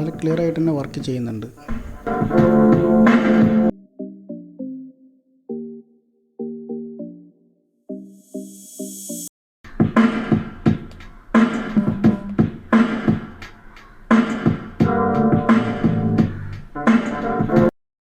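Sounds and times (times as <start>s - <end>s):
song with strong drum beat: 1.7s - 3.7s, 9.7s - 17.7s.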